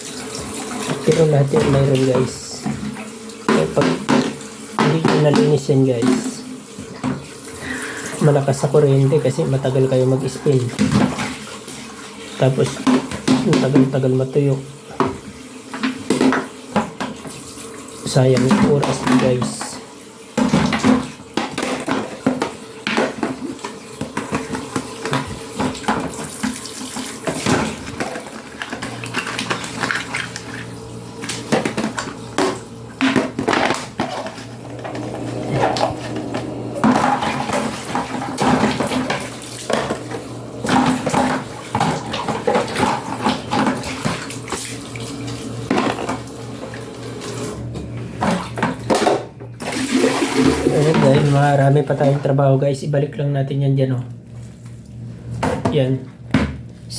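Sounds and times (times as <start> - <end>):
tap water running: 0.0 - 52.8
plastic strainer clattering: 20.4 - 44.8.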